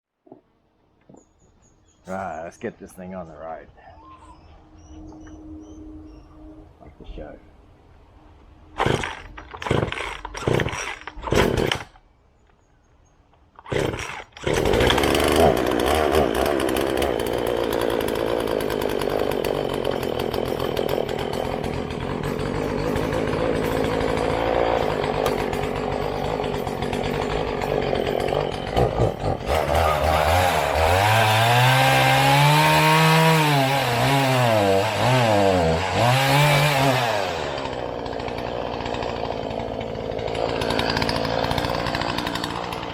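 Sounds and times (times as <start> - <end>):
chainsaw pull cord pulls: 8.8 - 12.0, 13.6 - 42.9
chainsaw engine running and revving: 13.7 - 42.9.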